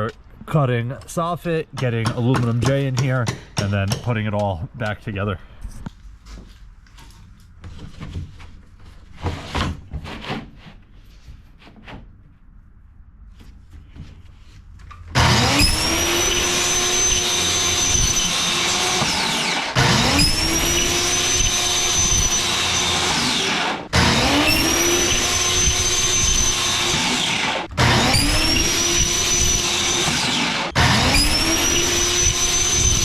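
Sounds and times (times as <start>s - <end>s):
power tool motor whining: 15.1s - 33.0s.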